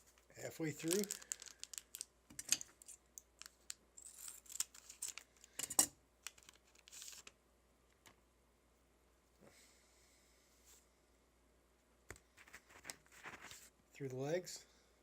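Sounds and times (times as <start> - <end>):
cards flipping and rustling: 0.0 - 5.6, 6.2 - 7.4, 12.4 - 13.7.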